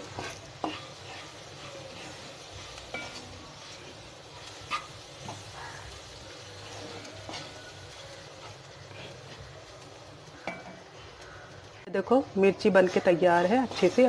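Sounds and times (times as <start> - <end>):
spoon clinking and scraping pan: 0.0 - 5.6, 6.6 - 9.5, 10.3 - 10.9, 13.4 - 14.0
food sizzling in a pan: 0.0 - 14.0.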